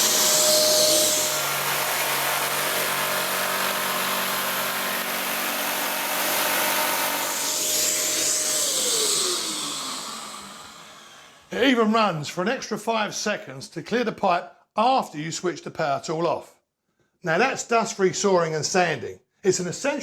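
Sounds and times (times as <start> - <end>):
power tool running: 0.0 - 11.5
tool motor winding down whine: 0.0 - 11.5
vacuum cleaner running: 0.0 - 11.5.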